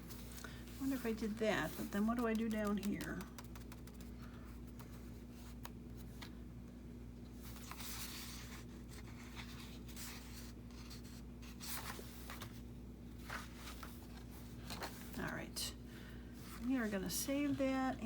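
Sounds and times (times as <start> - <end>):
faint hum: 0.0 - 18.0
paper rustling and sliding: 7.4 - 12.6, 13.2 - 15.2.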